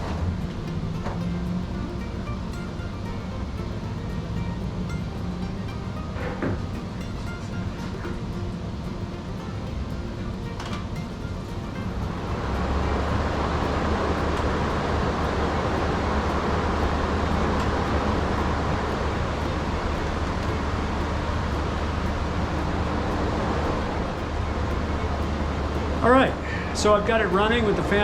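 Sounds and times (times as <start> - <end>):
swamp cooler fan running: 0.0 - 28.0.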